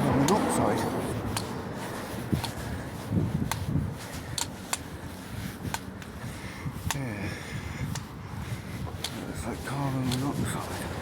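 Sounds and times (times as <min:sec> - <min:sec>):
light clicks and ticks: 0:02.4 - 0:02.6, 0:04.3 - 0:04.9, 0:08.9 - 0:09.3, 0:09.9 - 0:10.6.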